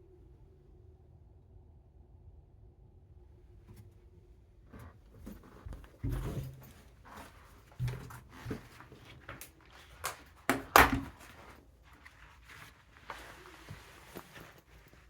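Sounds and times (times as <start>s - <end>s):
handling knocks clicks and rustles: 4.7s - 15.0s.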